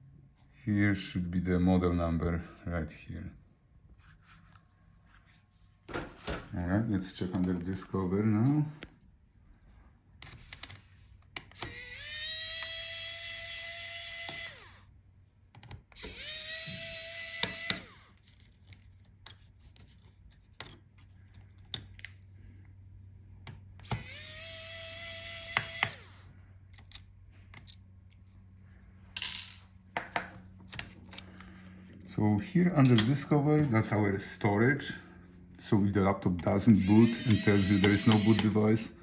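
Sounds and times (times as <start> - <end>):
electric screwdriver whining: 10.2 - 14.9, 15.9 - 18.3, 23.8 - 27.8, 36.7 - 38.9.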